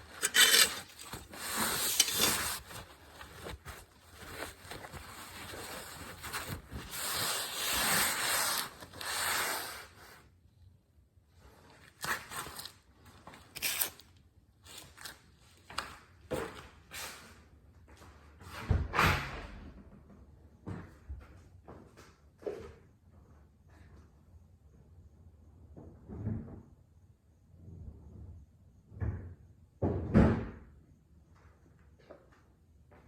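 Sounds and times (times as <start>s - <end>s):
rubbing and scraping: 0.0s - 10.0s
thump: 29.0s - 30.6s.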